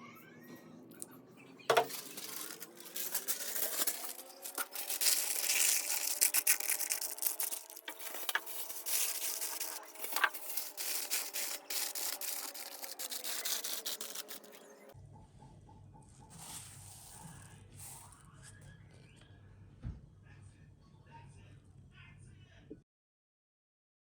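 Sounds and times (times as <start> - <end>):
rubbing and scraping with clicks: 1.7 - 14.8.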